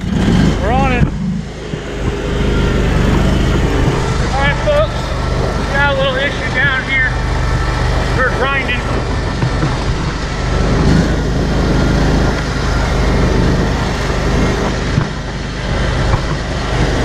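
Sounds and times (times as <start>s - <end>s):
combine harvester engine drone: 0.0s - 17.0s
rough mechanical grinding: 0.0s - 17.0s.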